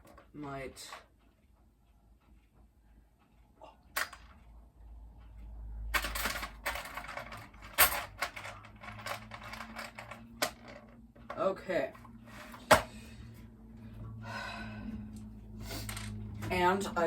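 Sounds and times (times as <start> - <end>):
plastic wire nuts rattling: 6.0 - 11.0.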